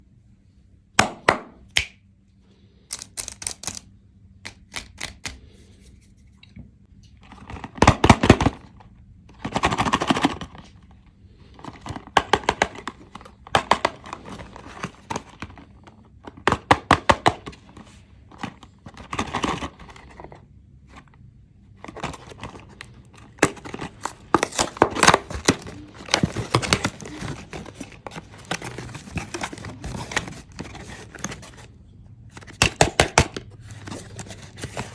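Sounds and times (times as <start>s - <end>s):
plastic wrappers crinkling: 21.9s - 31.7s.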